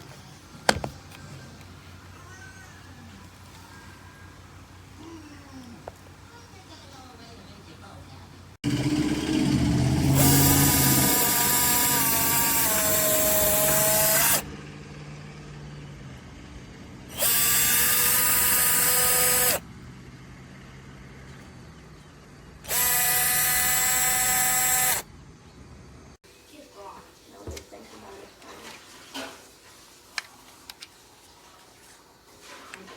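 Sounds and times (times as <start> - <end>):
cordless drill motor whine: 8.7 - 14.5, 17.1 - 19.6, 22.6 - 25.0.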